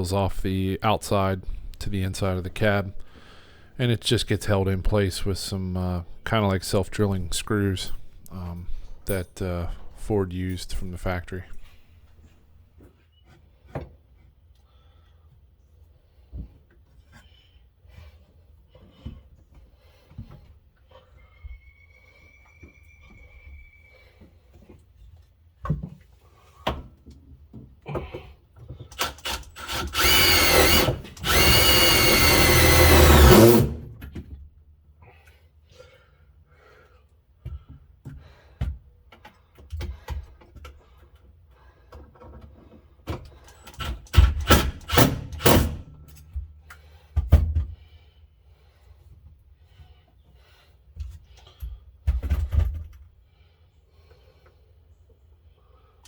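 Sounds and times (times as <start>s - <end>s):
power drill driving screws: 29.0s - 33.9s, 44.2s - 45.8s.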